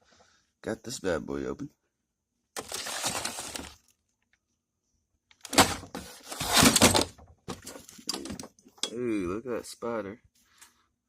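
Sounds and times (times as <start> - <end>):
metal toolbox clattering: 2.6 - 3.8, 5.4 - 8.5.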